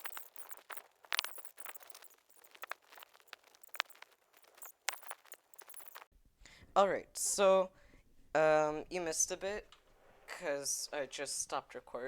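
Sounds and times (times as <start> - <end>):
cables and connectors clicking: 0.0 - 6.1.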